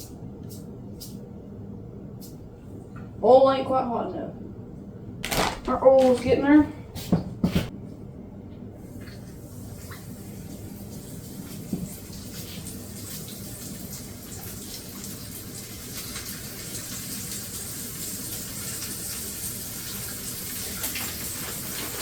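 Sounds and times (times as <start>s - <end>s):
hot oil hissing and crackling: 11.0s - 22.0s.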